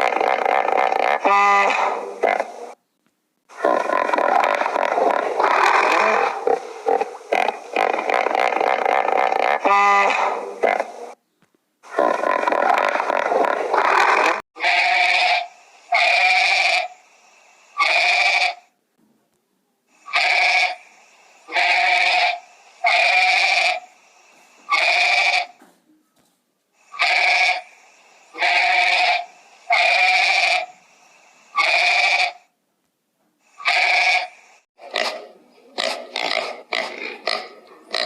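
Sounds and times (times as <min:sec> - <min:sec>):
animal bleating: 0:00.2 - 0:02.0, 0:13.7 - 0:16.9, 0:17.8 - 0:18.6, 0:20.1 - 0:20.8, 0:21.5 - 0:23.8, 0:24.7 - 0:25.6, 0:27.0 - 0:27.6, 0:28.4 - 0:30.7, 0:31.6 - 0:32.4, 0:33.6 - 0:34.3.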